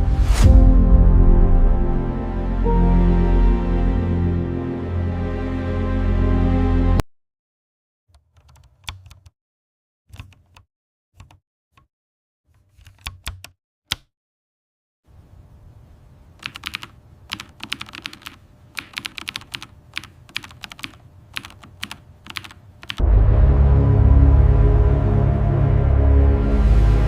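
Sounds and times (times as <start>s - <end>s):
mechanical keyboard typing: 8.2s - 9.3s, 10.1s - 10.6s, 12.8s - 14.0s, 16.4s - 23.0s.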